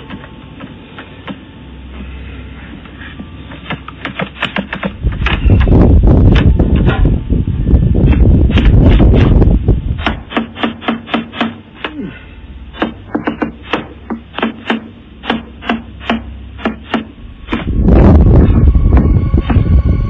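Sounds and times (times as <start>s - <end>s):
loud noisy rumble: 16.4s - 20.0s.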